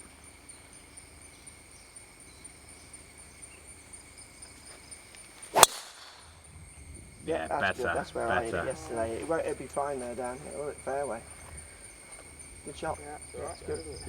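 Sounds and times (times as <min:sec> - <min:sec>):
insects droning: 0:00.0 - 0:14.0
golf driver striking ball: 0:05.5 - 0:06.2.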